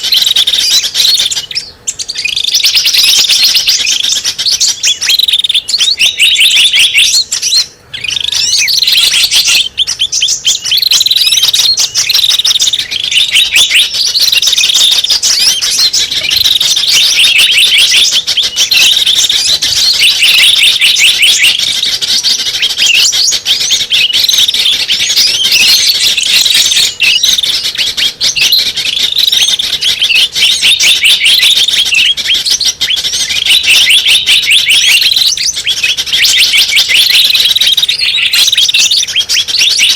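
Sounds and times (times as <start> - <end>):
songbirds chirping and trilling: 0.0 - 39.9.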